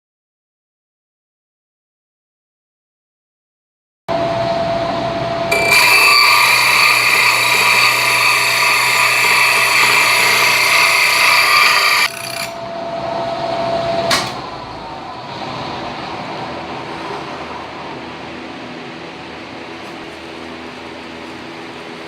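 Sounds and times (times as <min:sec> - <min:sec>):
drill press cutting whine: 0:04.6 - 0:12.8
drill press running free: 0:05.5 - 0:12.6.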